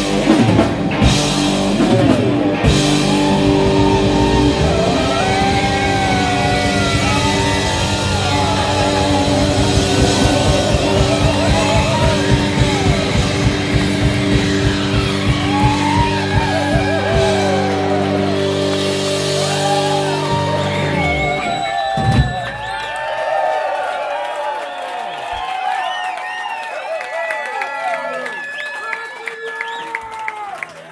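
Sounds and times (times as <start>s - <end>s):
live rock band playing: 0.0s - 22.6s.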